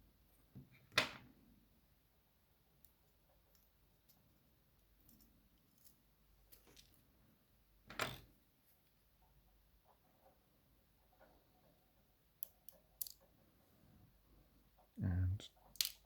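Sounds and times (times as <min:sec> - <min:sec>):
faint clicks of small metal lock parts: 0:04.8 - 0:07.0, 0:12.4 - 0:13.3, 0:15.7 - 0:16.0.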